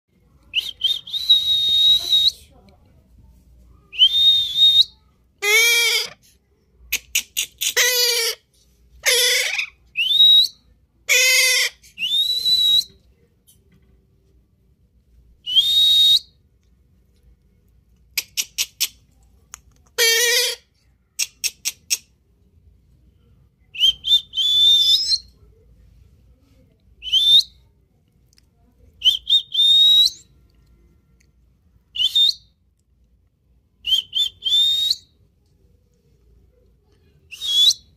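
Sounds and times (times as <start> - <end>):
parrot squawking: 5.4 - 6.2, 7.0 - 8.4, 9.0 - 9.8, 11.1 - 11.8, 20.0 - 20.6
rising whistles: 33.9 - 35.0, 37.3 - 37.9.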